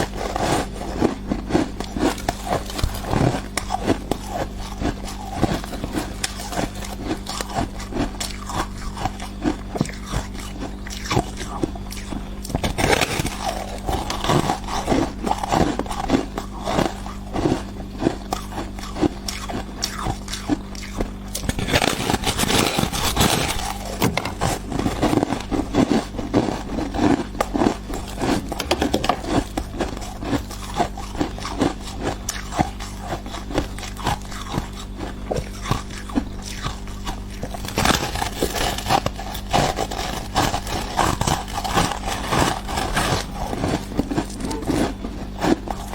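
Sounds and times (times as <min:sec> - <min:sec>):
frost ice crunching: 0:00.0 - 0:45.9.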